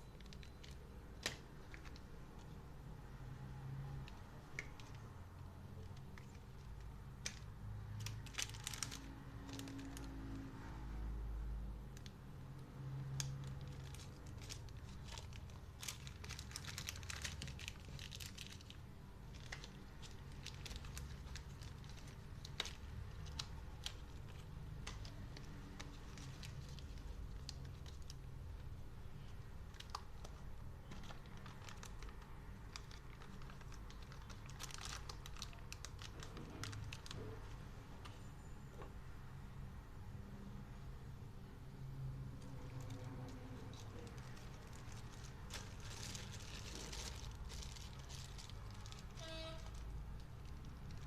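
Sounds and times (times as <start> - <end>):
packaging crinkling and rustling: 0.1 - 2.6, 5.8 - 10.4, 13.1 - 37.4, 42.4 - 51.0.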